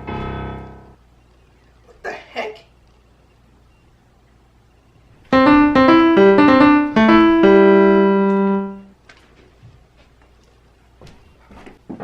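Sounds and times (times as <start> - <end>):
piano phrase: 0.0 - 1.0, 5.3 - 8.9.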